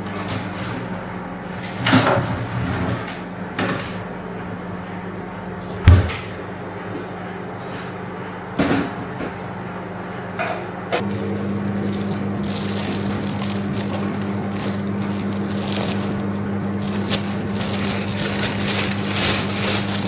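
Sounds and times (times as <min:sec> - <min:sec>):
cupboard doors knocking: 0:05.9 - 0:06.3
low thud: 0:05.9 - 0:06.3.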